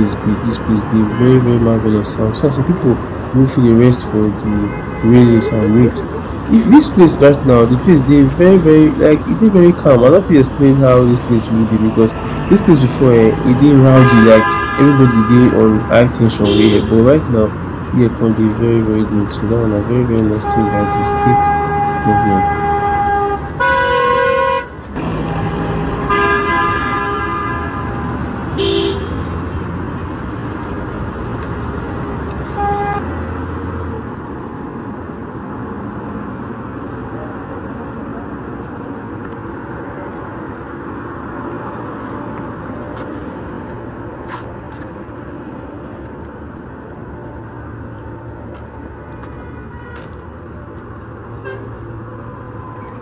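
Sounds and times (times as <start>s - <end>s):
car horns honking: 0.0s - 2.1s, 3.8s - 7.1s, 10.8s - 17.3s, 20.1s - 29.6s, 32.4s - 33.1s, 49.3s - 50.2s, 51.4s - 51.8s
hum of passing vehicles: 0.0s - 53.0s.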